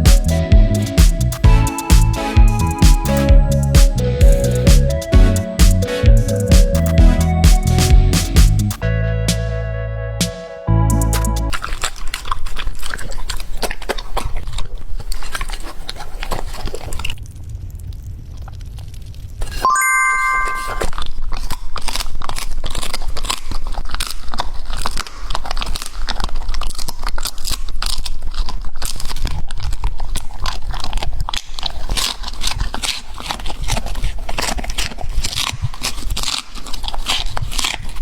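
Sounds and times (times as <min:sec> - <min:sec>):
dog chewing and crunching: 0:11.5 - 0:17.2, 0:20.8 - 0:38.0
short chime: 0:19.6 - 0:21.0.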